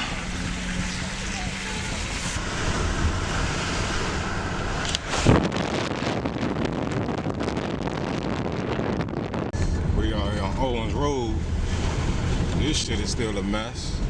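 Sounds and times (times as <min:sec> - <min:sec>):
tyres on slushy road: 0:00.0 - 0:06.7, 0:09.6 - 0:14.0
whoosh: 0:00.0 - 0:08.3.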